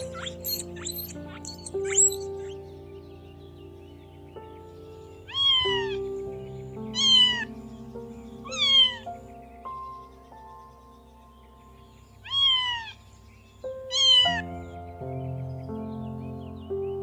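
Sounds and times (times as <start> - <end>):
background music: 0.0 - 17.0
cat meowing: 5.3 - 6.0, 7.0 - 7.5, 8.5 - 9.0, 12.2 - 13.0, 13.9 - 14.5.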